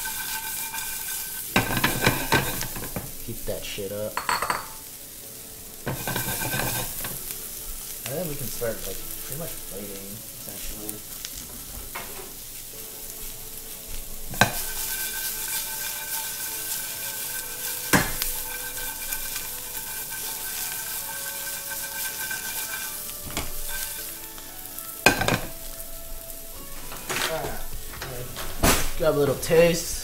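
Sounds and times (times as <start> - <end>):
utensil clanking against pan: 0.0 - 3.2, 4.2 - 4.9, 5.8 - 7.3, 14.3 - 25.8
food sizzling in a frying pan: 0.0 - 30.0.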